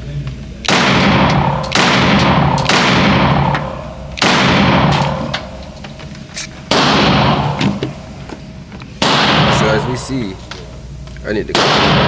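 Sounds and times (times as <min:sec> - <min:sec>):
pistol shots echoing: 0:00.6 - 0:05.4, 0:06.7 - 0:07.7, 0:09.0 - 0:10.2, 0:11.5 - 0:12.0.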